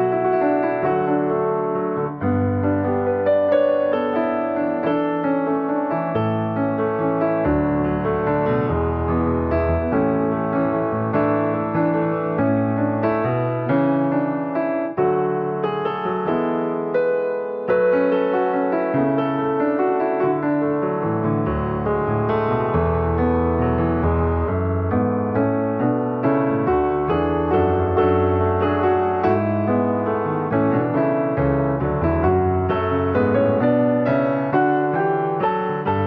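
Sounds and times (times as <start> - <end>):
gentle piano piece: 0.0 - 36.0.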